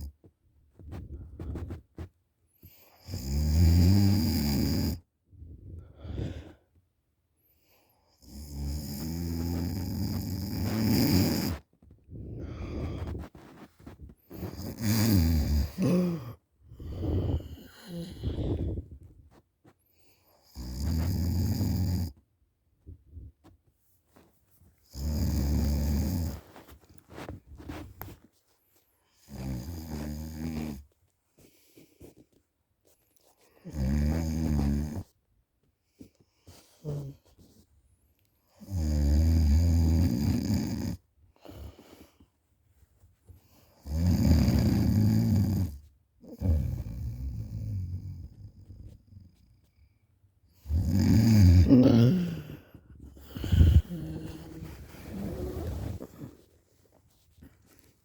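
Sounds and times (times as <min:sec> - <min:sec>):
quiet breaths: 0:00.0 - 0:38.8, 0:39.4 - 0:58.0
person snoring: 0:03.0 - 0:05.0, 0:08.2 - 0:11.6, 0:14.3 - 0:18.9, 0:20.6 - 0:22.1, 0:24.9 - 0:26.5, 0:29.3 - 0:30.8, 0:43.8 - 0:48.3, 0:50.6 - 0:56.5.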